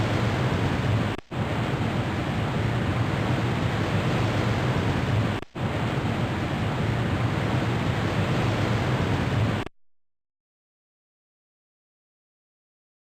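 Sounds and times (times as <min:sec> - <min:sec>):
ocean waves rushing: 0:00.0 - 0:09.7.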